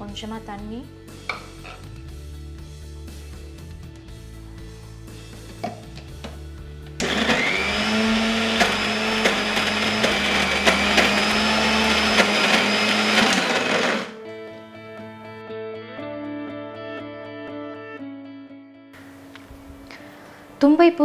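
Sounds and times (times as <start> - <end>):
mixer grinder motor running: 7.0 - 14.2.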